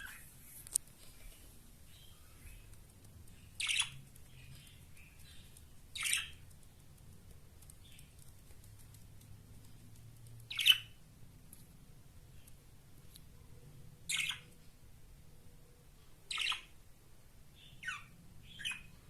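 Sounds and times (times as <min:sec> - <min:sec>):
faint soft chirping: 0:00.0 - 0:11.7, 0:12.3 - 0:16.8, 0:17.5 - 0:19.0
budgerigars chirping: 0:03.5 - 0:06.4, 0:10.5 - 0:11.0, 0:14.1 - 0:14.5, 0:16.3 - 0:16.7, 0:17.7 - 0:18.9.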